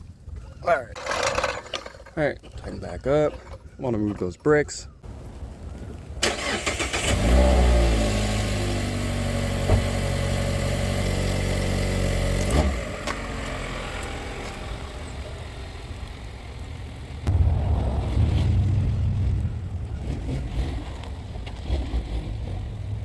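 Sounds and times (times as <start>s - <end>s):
car engine starting and idling: 6.2s - 23.0s.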